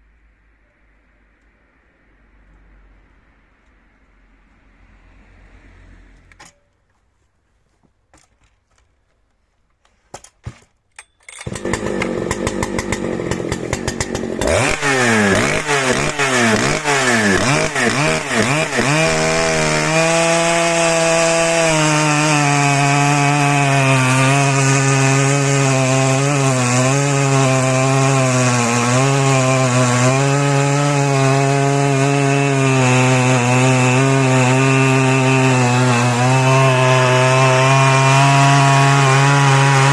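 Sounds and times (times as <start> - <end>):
chainsaw revving and cutting wood: 11.4 - 39.9.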